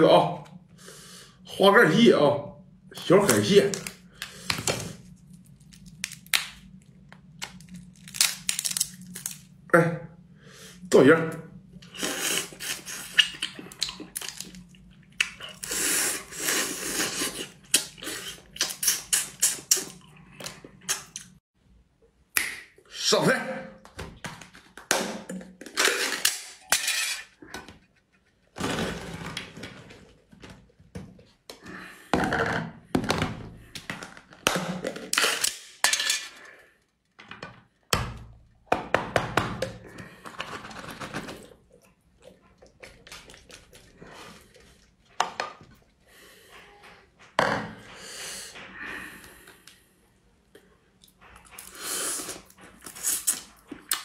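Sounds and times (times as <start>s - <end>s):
crab shells crunching: 3.3s - 9.5s.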